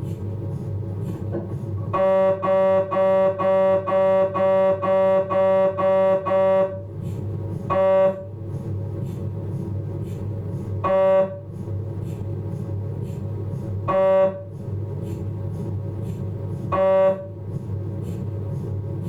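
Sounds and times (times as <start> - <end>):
loud pitched scanner buzzes: 1.9 - 6.9, 7.6 - 8.3, 10.8 - 11.5, 13.8 - 14.5, 16.7 - 17.3.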